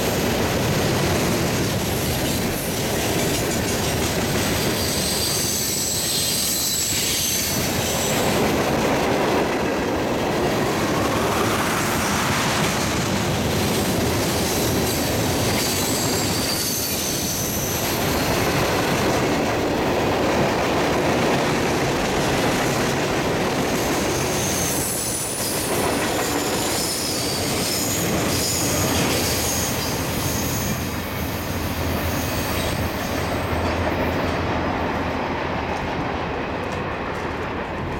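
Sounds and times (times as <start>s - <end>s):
train cars rumbling on rails: 0.0s - 37.9s
wheels squealing: 2.0s - 8.5s, 13.7s - 18.8s, 23.7s - 31.3s.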